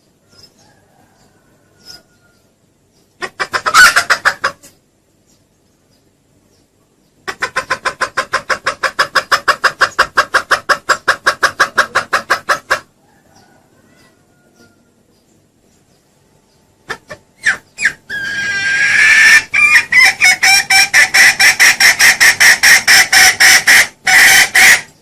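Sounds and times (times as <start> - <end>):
junglefowl lure clucks: 3.2 - 4.8, 7.3 - 14.7, 16.9 - 25.0.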